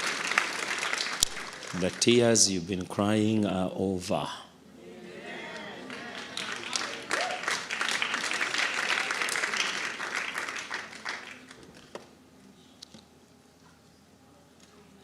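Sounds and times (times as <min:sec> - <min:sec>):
congregation applauding: 0:00.0 - 0:02.8, 0:05.5 - 0:11.8.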